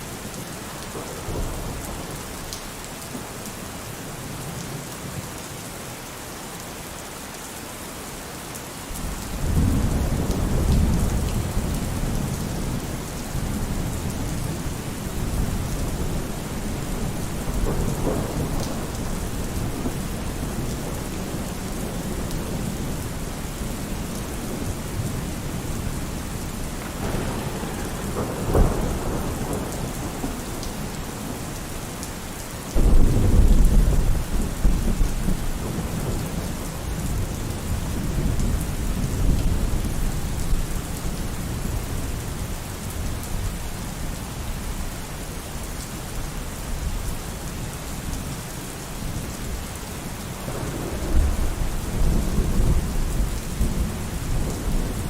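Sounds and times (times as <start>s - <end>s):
heavy rain: 0.0s - 55.0s
rolling thunder: 8.9s - 40.7s, 50.4s - 55.0s.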